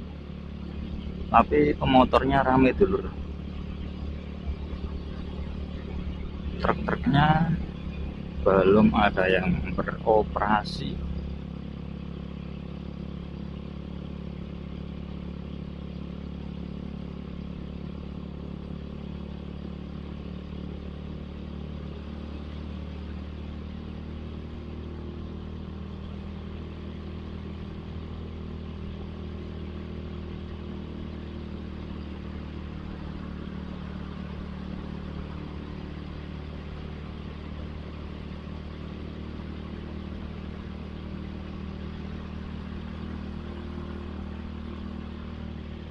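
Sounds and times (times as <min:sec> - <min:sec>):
motorcycle engine cruising: 0:00.0 - 0:45.9.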